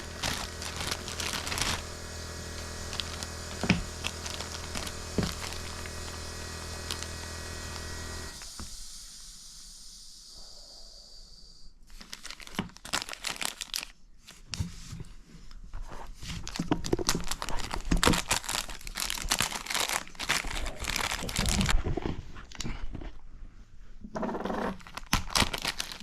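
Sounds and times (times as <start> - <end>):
rustling and crinkling: 0.0 - 7.9, 11.9 - 23.6, 24.7 - 26.0
steady hiss: 8.2 - 11.8.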